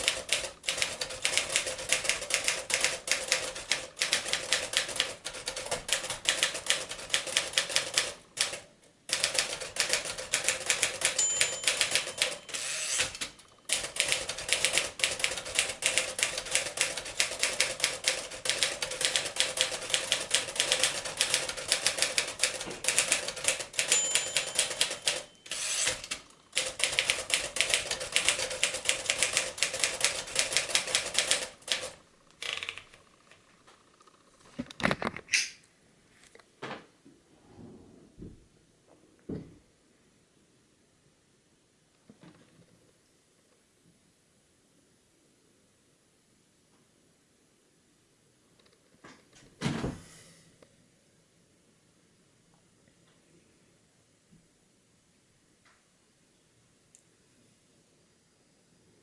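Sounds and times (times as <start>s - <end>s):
typewriter carriage return: 0.0s - 32.9s
typewriter typing clicks: 0.0s - 33.0s
typewriter margin bell ring: 9.1s - 16.4s, 20.5s - 31.8s.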